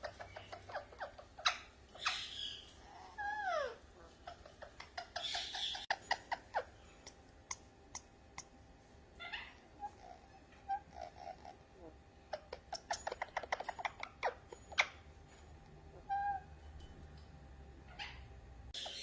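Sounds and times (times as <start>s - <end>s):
parrot clicking and chirping: 0.0s - 8.6s, 12.3s - 15.0s.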